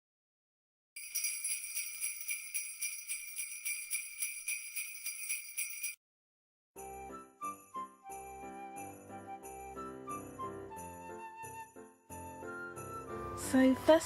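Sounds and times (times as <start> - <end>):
sleigh bells shaken: 1.0 - 6.0, 7.5 - 12.9.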